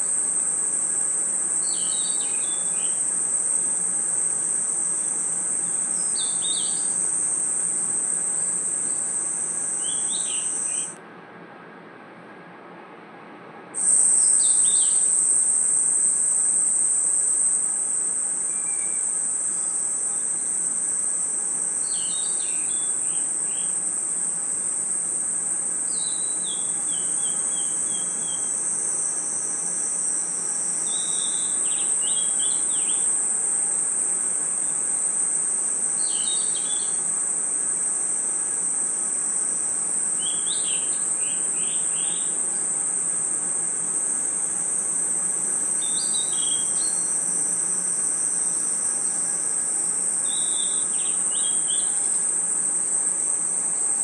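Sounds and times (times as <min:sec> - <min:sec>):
crickets and insects chirring: 0:00.0 - 0:11.0, 0:13.8 - 0:54.0
bird chirps: 0:01.6 - 0:03.0, 0:06.0 - 0:07.0, 0:09.8 - 0:10.9, 0:21.8 - 0:23.8, 0:36.0 - 0:36.9.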